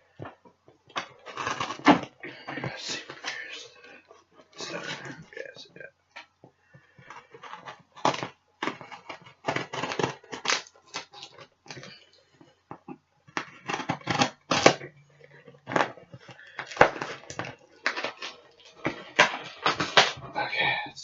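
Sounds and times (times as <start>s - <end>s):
packing tape being torn open: 0.9s - 2.1s, 8.0s - 11.9s, 13.4s - 14.9s, 15.7s - 20.2s.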